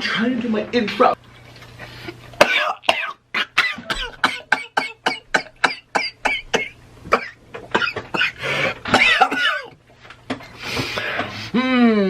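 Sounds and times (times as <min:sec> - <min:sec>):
person making cough-like noises: 0:02.4 - 0:09.7.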